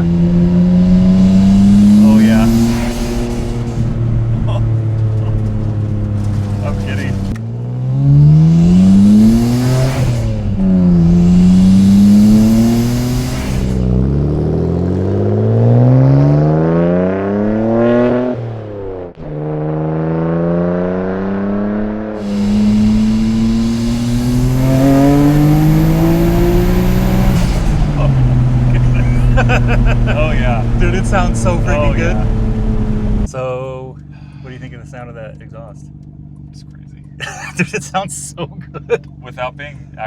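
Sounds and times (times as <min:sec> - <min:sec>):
car engine accelerating hard: 0:00.0 - 0:33.5.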